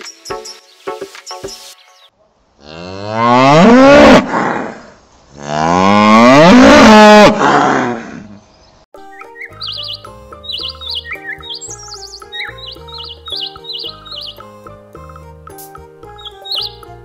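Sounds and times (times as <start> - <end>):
cow mooing: 2.6 - 4.3, 5.4 - 7.4.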